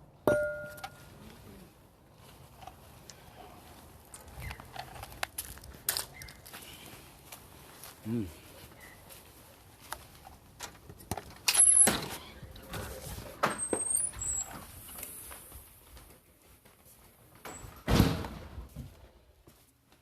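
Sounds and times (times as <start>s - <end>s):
brief high squeaks: 13.6s - 15.2s.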